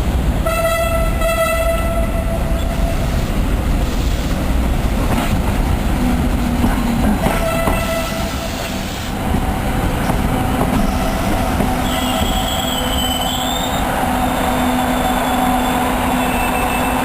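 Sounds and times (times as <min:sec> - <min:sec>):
diesel locomotive rumbling: 0:00.0 - 0:17.0
locomotive horn blast: 0:00.4 - 0:03.0, 0:07.3 - 0:08.6, 0:11.8 - 0:13.5.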